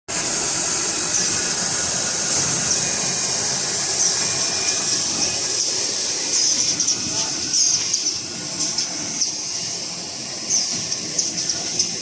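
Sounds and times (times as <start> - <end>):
machinery loud mechanical hiss: 0.1 - 12.0.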